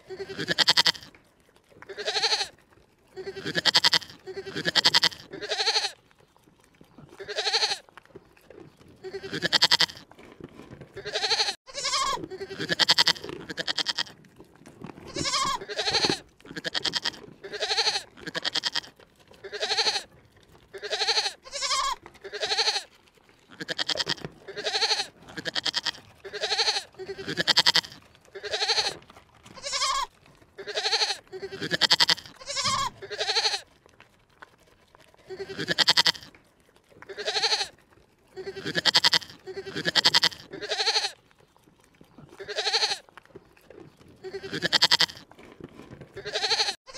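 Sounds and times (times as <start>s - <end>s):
livestock bleating: 0.0s - 1.2s, 1.8s - 6.0s, 7.1s - 7.8s, 9.0s - 10.1s, 11.0s - 14.2s, 15.1s - 20.1s, 20.7s - 22.9s, 23.5s - 33.7s, 35.3s - 36.4s, 37.1s - 41.2s, 42.3s - 43.1s, 44.2s - 45.3s, 46.2s - 46.9s.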